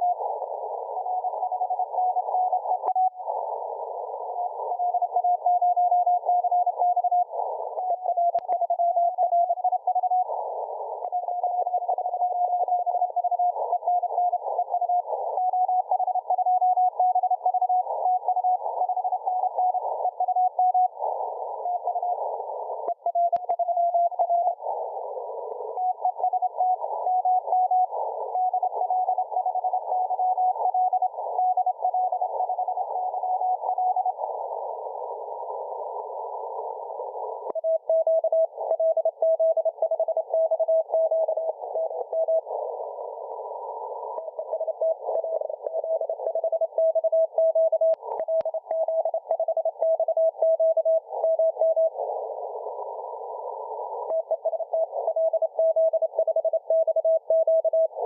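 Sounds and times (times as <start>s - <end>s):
radio hiss: 0.1s - 1.5s
click: 8.3s - 8.6s, 23.3s - 23.6s, 47.9s - 49.0s.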